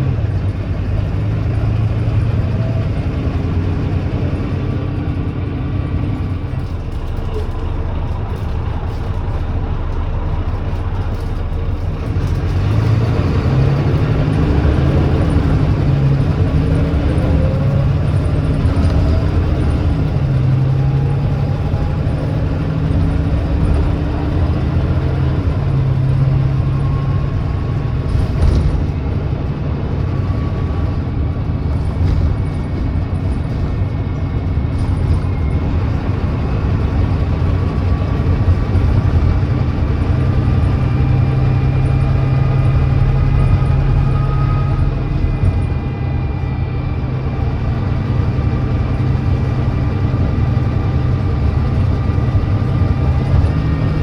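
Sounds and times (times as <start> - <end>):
diesel bus engine accelerating: 0.0 - 54.0
gearbox whine: 0.0 - 54.0.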